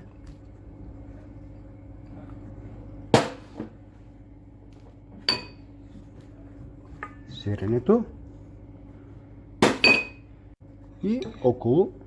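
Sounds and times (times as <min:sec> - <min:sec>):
faint steady hum: 0:00.0 - 0:12.0
kitchenware clacking: 0:05.2 - 0:05.6, 0:09.6 - 0:10.2.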